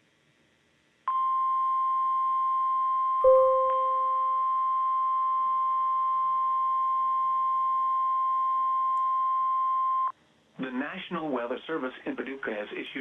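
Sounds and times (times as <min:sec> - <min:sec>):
steady warning beep tone: 0:01.1 - 0:06.5
loud low tone: 0:03.3 - 0:04.2.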